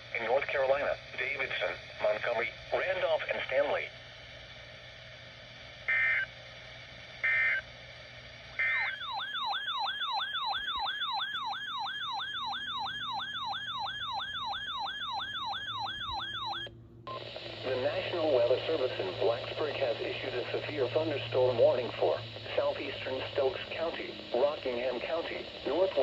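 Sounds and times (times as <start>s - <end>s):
digital data bursts: 12.0s - 26.0s.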